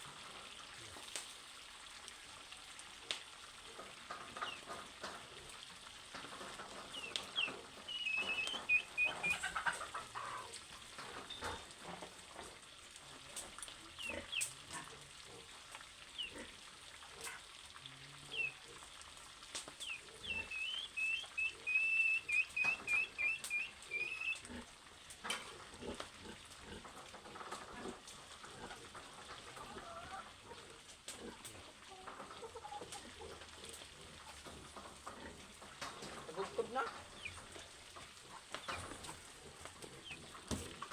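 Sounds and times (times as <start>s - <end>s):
food frying in a pan: 0.0s - 9.1s, 9.8s - 21.4s, 22.2s - 29.5s
bird chirping: 7.0s - 9.4s, 19.8s - 24.4s.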